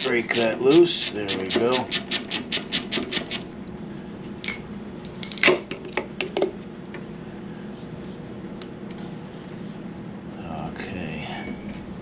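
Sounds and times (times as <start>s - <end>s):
metallic clinks of hand tools: 0.0s - 3.5s.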